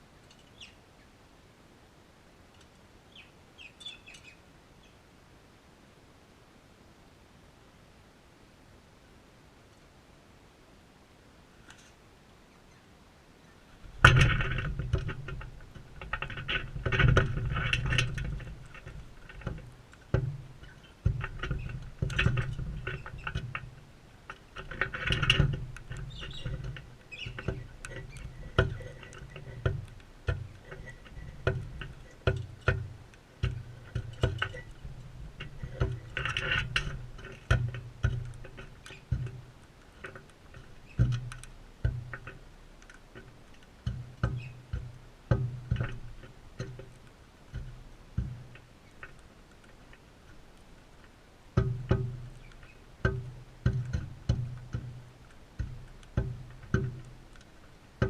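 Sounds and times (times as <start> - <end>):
birds pecking and scrabbling: 0.0 - 1.3, 2.4 - 5.1, 11.5 - 58.0
low knocks: 51.6 - 57.2.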